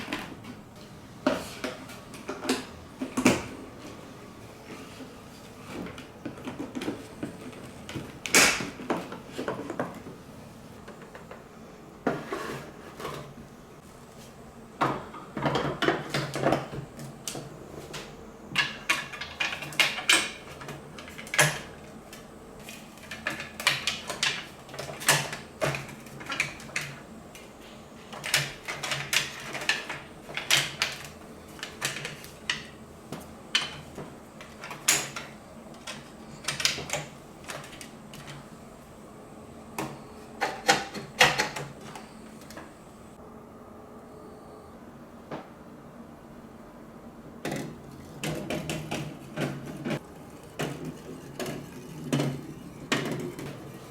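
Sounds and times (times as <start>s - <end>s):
electric pump hum: 46.6s - 53.9s.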